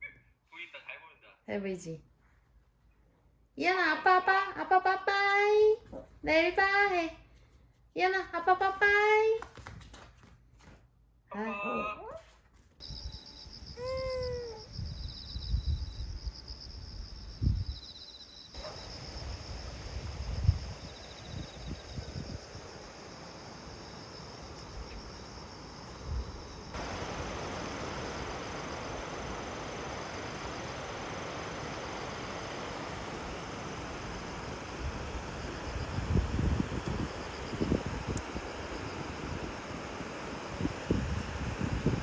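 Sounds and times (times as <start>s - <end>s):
insects singing: 12.8s - 42.0s.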